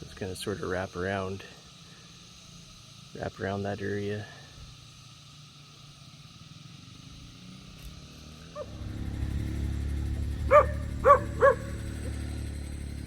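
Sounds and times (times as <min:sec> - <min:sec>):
dog barking: 0:10.2 - 0:12.3.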